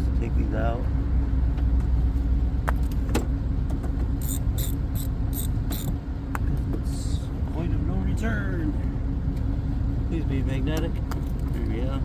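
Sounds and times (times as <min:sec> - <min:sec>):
low rumble with hum: 0:00.0 - 0:12.0
ratchet clicking: 0:04.2 - 0:05.9.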